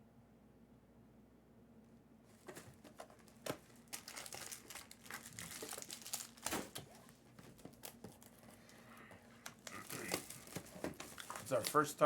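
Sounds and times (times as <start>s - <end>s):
plastic wrapping crinkling and tearing: 3.1s - 8.8s, 9.4s - 12.0s.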